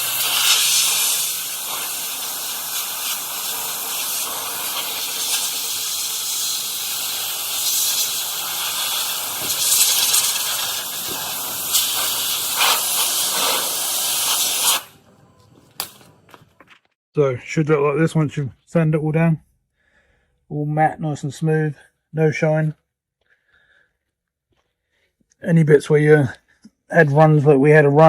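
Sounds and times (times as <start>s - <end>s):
compressed air blow gun hissing: 0.0s - 14.9s.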